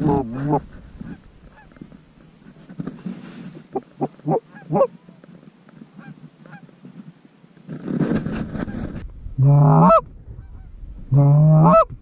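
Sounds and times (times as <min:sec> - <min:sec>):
goose honking: 0:03.7 - 0:05.0, 0:09.6 - 0:10.6, 0:11.5 - 0:11.9.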